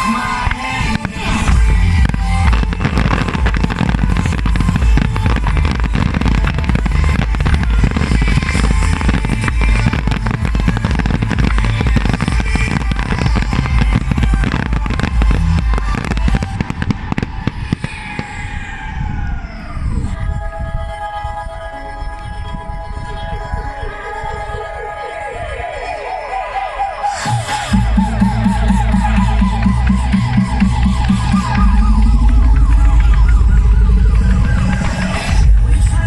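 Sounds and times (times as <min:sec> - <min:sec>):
fireworks bangs and crackles: 0:00.0 - 0:19.8
soundtrack music: 0:00.0 - 0:20.3, 0:21.0 - 0:36.0.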